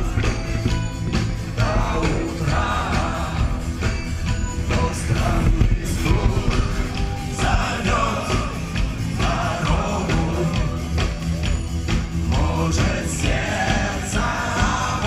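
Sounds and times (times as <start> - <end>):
drum beat: 0.0 - 15.0
rock band playing live: 0.0 - 15.0
person singing: 1.5 - 11.0.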